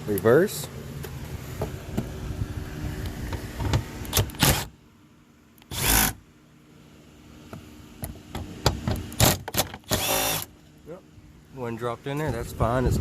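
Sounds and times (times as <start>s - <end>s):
cordless impact driver running: 4.1s - 4.7s, 5.7s - 6.2s, 9.2s - 10.5s.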